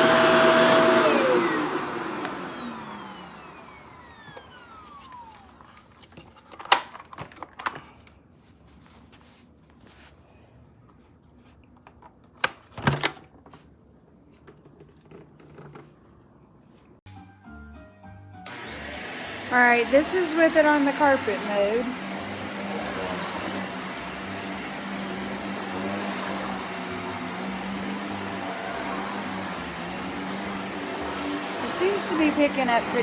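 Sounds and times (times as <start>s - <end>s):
vacuum cleaner motor winding down: 0.0s - 5.8s, 18.4s - 33.0s.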